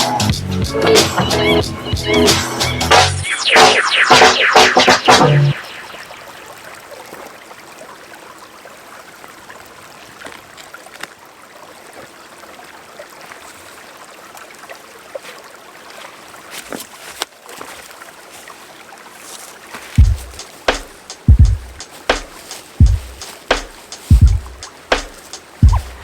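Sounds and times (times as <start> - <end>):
stream water flowing: 5.7 - 26.0
sharp knocks: 20.0 - 26.0.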